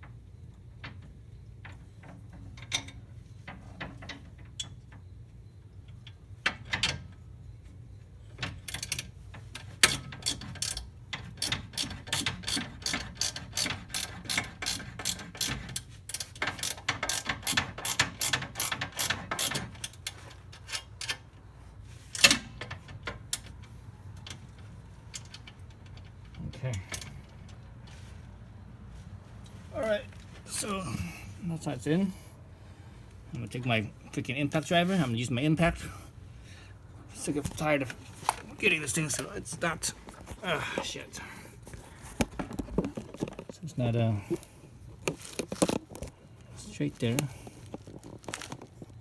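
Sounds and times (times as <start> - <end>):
ratchet wrench clicking: 9.8 - 20.0
metal clinks and knocks: 37.3 - 43.6, 44.2 - 49.0.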